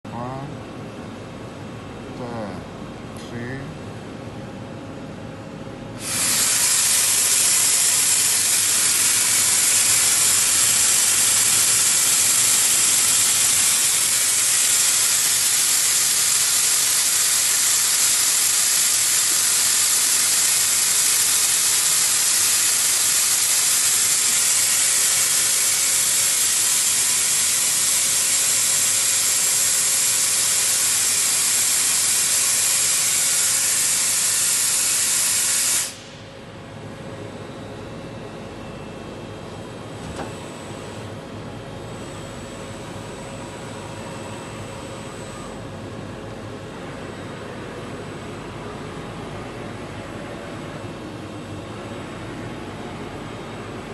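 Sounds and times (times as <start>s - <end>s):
loud steady hiss: 6.0s - 36.2s.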